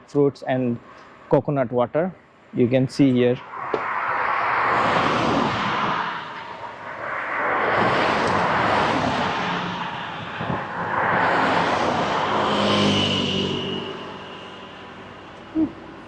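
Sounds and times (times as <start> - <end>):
vehicles passing on highway: 3.3 - 16.0.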